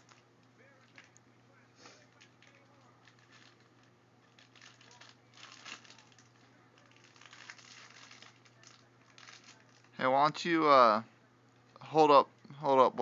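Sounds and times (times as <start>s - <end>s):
low electrical hum: 0.0s - 13.0s
packaging crinkling and rustling: 2.1s - 10.0s.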